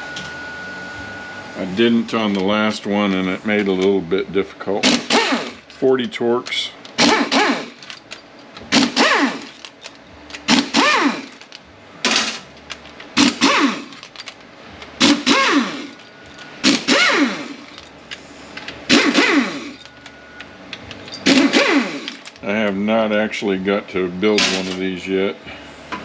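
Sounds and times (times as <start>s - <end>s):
power driver spinning out bolts: 13.2s - 14.4s, 18.9s - 19.9s, 20.9s - 22.4s.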